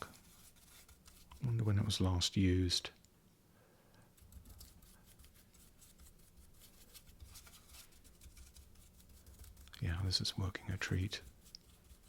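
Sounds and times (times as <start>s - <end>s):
soapy scrubbing on wood: 11.2s - 12.0s.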